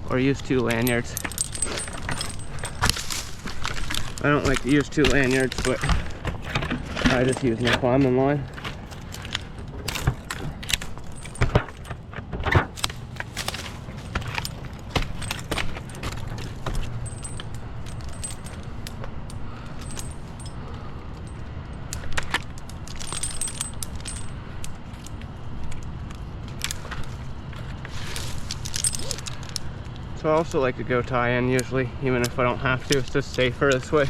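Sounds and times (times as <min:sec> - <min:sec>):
metal climbing hardware clinking: 0:00.0 - 0:34.0.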